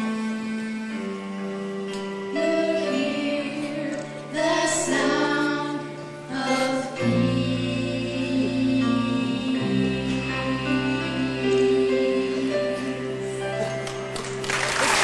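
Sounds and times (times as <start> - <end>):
instrumental accompaniment: 0.0 - 15.0
voices singing together: 2.4 - 13.7.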